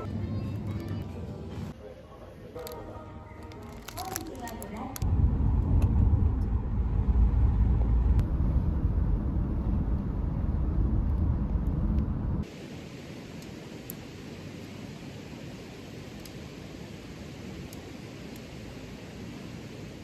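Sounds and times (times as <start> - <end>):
car road rumble: 5.0 - 12.4.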